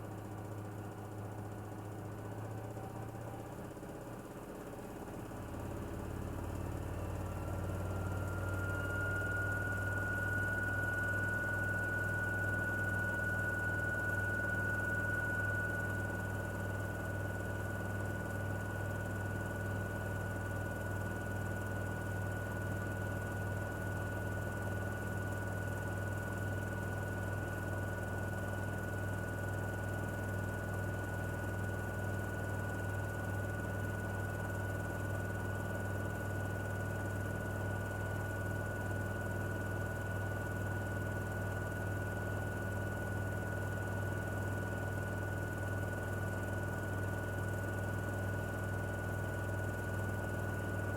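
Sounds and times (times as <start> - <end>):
high-pitched whine: 7.0 - 17.8.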